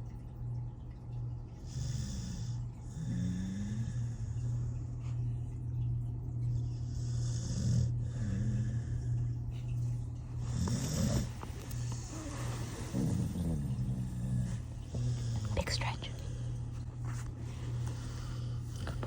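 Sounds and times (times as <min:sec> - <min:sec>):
steady low hum: 0:00.0 - 0:19.0
dog snoring: 0:01.6 - 0:04.7, 0:06.8 - 0:09.5, 0:10.4 - 0:19.0.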